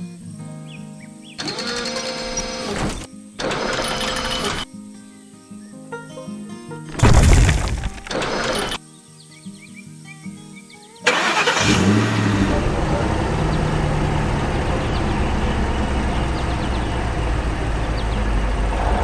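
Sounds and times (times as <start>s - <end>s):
vehicle engine starting and rumbling: 11.1s - 19.0s.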